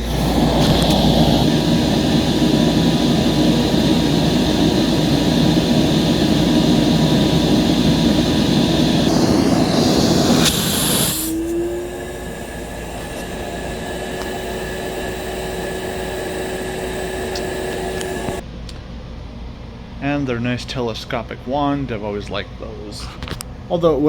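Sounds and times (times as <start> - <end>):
sharp hiss: 0.0 - 18.4
vacuum cleaner rushing: 0.0 - 18.4.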